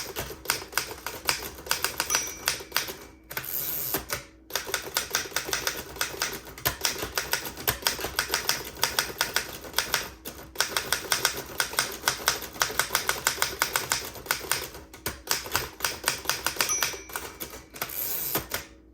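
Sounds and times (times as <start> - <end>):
manual typewriter typing: 0.0 - 18.7
typewriter margin bell: 1.7 - 3.8, 16.2 - 18.5.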